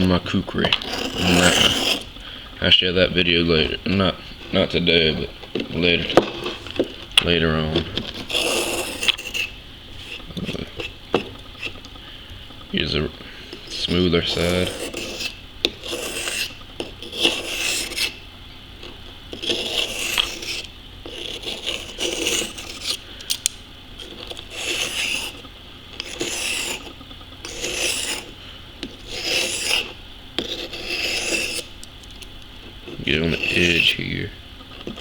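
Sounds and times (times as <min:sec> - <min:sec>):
knife scraping on sharpening stone: 0:00.8 - 0:02.1, 0:08.2 - 0:11.0, 0:14.4 - 0:18.2, 0:19.3 - 0:23.0, 0:24.4 - 0:25.4, 0:26.0 - 0:28.3, 0:28.9 - 0:31.7.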